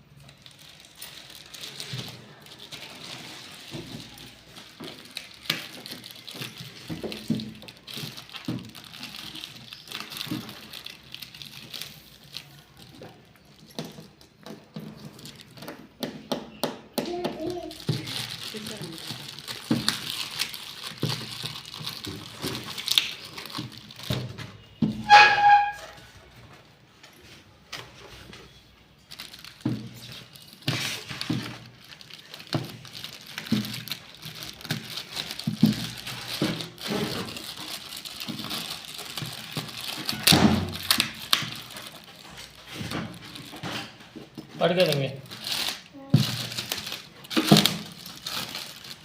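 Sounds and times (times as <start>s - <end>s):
knocks and taps of objects: 15.6s - 18.0s.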